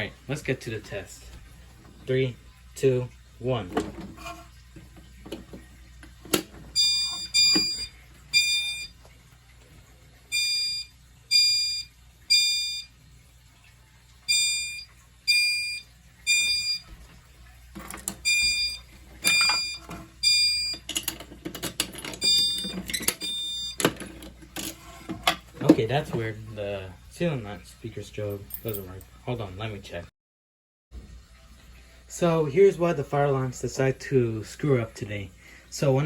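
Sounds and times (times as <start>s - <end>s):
fire alarm chimes: 6.7s - 9.0s, 10.3s - 13.0s, 14.3s - 16.9s, 18.2s - 20.9s, 22.2s - 23.9s.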